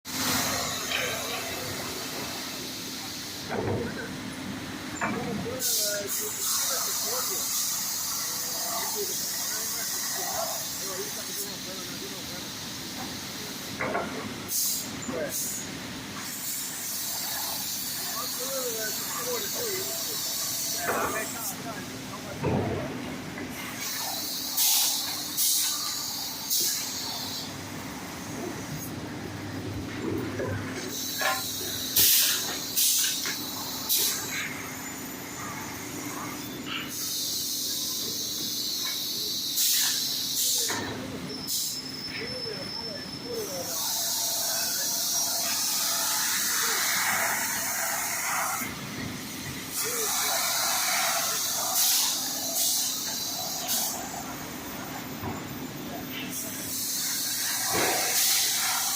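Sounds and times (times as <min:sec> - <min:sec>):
short hisses of air: 0:14.5 - 0:15.6, 0:23.8 - 0:27.4, 0:30.9 - 0:34.5, 0:38.4 - 0:40.6, 0:49.7 - 0:54.0, 0:56.3 - 0:58.9.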